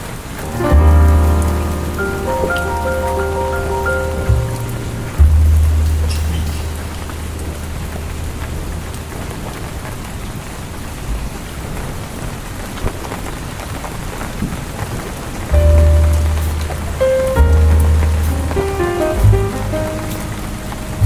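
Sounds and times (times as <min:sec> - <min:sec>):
rain pattering on a window: 0:00.0 - 0:21.0
soft musical chord: 0:00.4 - 0:09.6, 0:15.6 - 0:21.0
low rumble: 0:00.4 - 0:09.8, 0:15.5 - 0:21.0.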